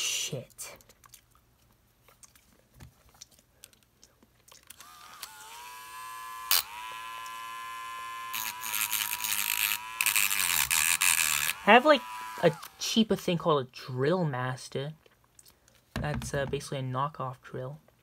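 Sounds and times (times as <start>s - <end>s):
rotary tool grinding: 4.7s - 12.8s
rotary tool whining: 4.8s - 12.8s.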